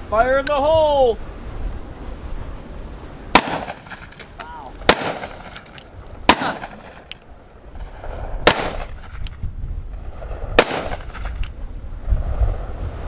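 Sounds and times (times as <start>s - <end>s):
gunshots cracking: 3.3s - 7.1s, 7.8s - 9.2s, 10.1s - 11.4s.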